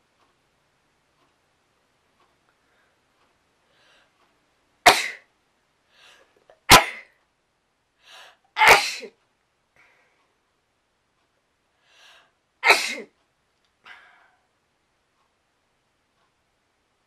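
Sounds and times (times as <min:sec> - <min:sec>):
person sneezing: 0:04.9 - 0:05.2, 0:06.7 - 0:07.1, 0:08.6 - 0:09.2, 0:12.6 - 0:13.1.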